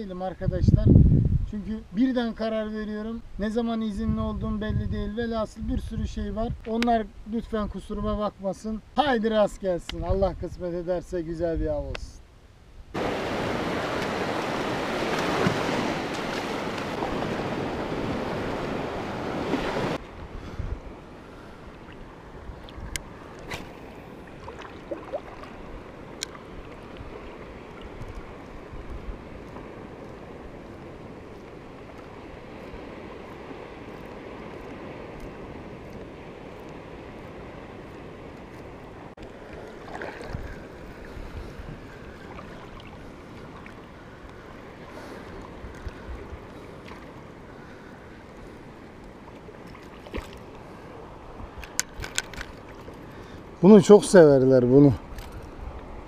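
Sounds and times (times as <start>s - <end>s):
loud wind rushing: 0.6s - 1.5s
wash of surf: 12.9s - 38.3s, 39.0s - 51.3s.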